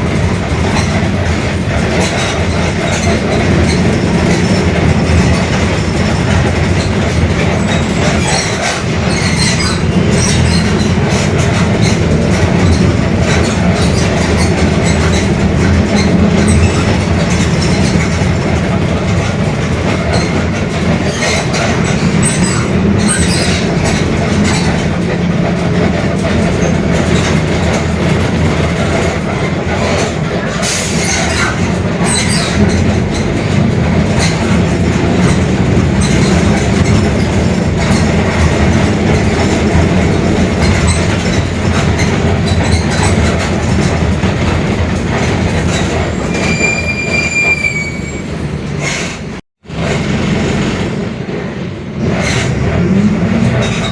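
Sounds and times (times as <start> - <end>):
body rattles and clicks: 0.0 - 46.6
growling differential: 0.0 - 46.6
bus diesel engine droning: 0.0 - 53.9
high squeal: 45.7 - 49.2.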